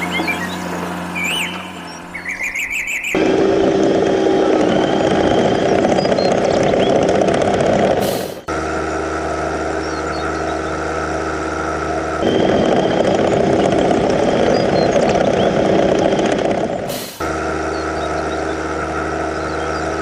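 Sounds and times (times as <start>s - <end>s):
faint bird chirps: 0.0s - 3.2s
heavy vehicle engine running: 0.0s - 20.0s.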